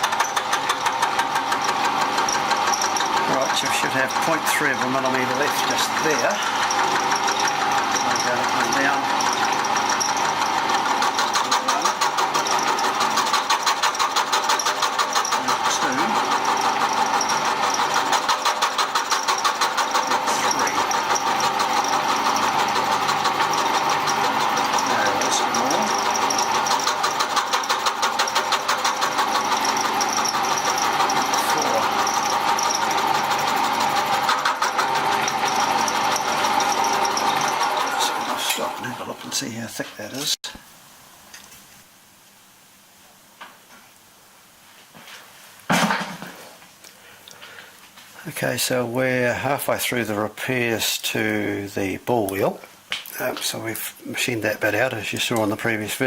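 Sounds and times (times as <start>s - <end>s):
milling machine cutting metal: 0.0s - 39.5s.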